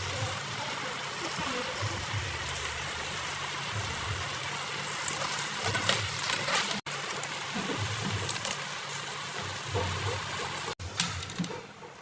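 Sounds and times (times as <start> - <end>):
food sizzling in a hot pan: 0.0 - 10.8
frying crackles: 0.0 - 10.9.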